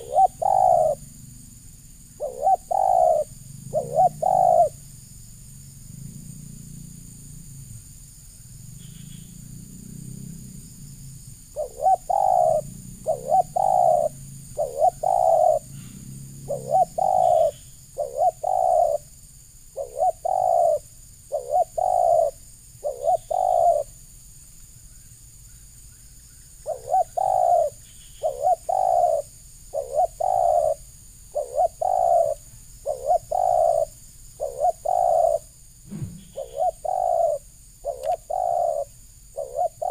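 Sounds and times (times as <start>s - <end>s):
dove cooing: 0.0s - 1.3s, 2.2s - 4.8s, 10.1s - 23.9s, 26.6s - 39.9s.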